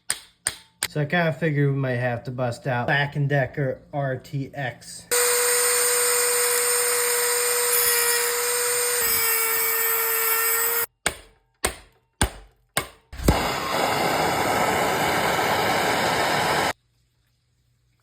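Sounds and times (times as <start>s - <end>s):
rotary tool high-pitched whine: 5.1s - 10.9s, 13.2s - 16.8s.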